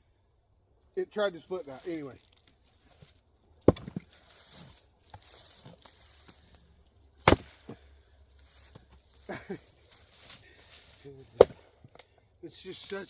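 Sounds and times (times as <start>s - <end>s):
wood pieces knocking: 3.6s - 4.1s
axe chopping firewood: 3.6s - 4.2s, 7.2s - 7.9s, 11.3s - 12.0s.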